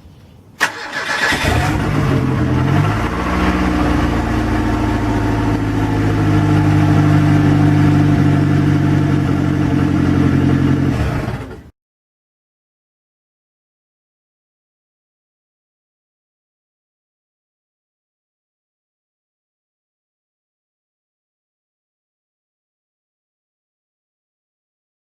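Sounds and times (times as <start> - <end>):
vehicle engine starting and idling: 0.6 - 11.7.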